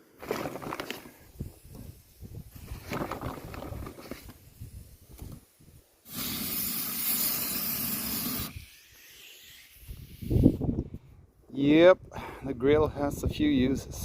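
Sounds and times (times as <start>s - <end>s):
gas burner hissing: 4.0s - 10.6s.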